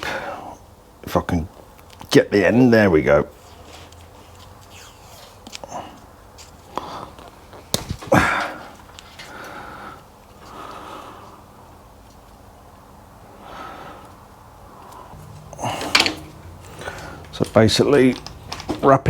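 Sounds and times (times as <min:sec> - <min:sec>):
tape ripping: 0:07.2 - 0:09.1.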